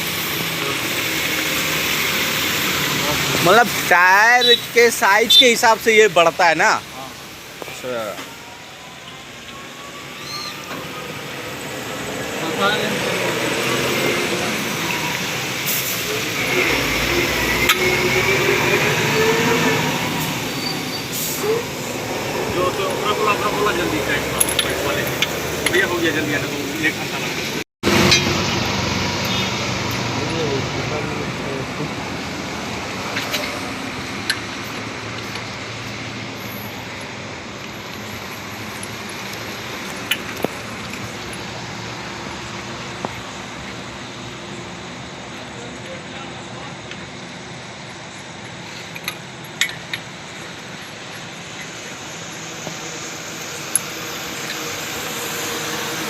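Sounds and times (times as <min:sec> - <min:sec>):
road traffic noise: 0:00.0 - 0:56.0
steady background noise: 0:00.0 - 0:56.0
metallic squeal wavering in pitch: 0:08.1 - 0:11.4, 0:16.1 - 0:22.0
sharp metallic clicks: 0:48.0 - 0:52.5.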